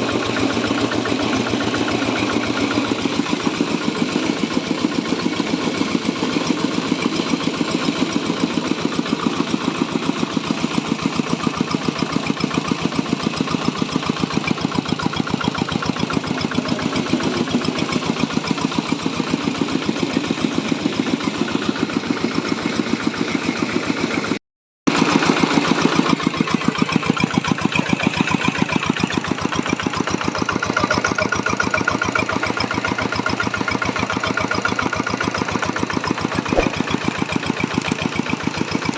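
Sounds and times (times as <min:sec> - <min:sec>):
diesel engine driving grinding mill: 0:00.0 - 0:06.8.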